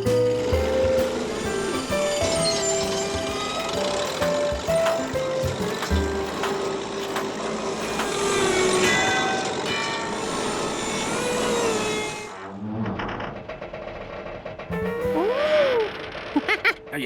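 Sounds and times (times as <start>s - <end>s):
rattling and creaking: 0.0s - 17.0s
cartoon machinery din: 14.7s - 17.0s.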